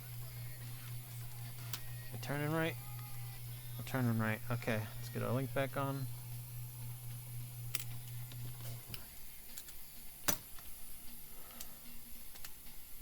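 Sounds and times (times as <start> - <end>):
small parts and tools clicking: 7.7 - 10.7, 11.4 - 12.7.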